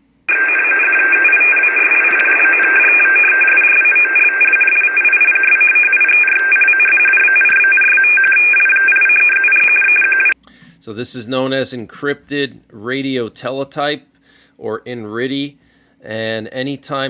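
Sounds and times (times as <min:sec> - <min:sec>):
alternating data tones: 0:00.3 - 0:10.4
radio static hiss: 0:00.3 - 0:10.4.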